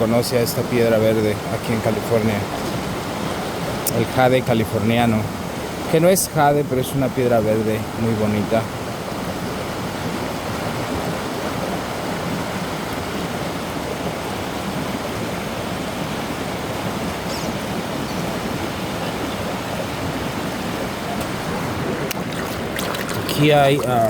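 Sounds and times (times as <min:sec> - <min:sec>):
creek water rushing: 0:00.0 - 0:24.0.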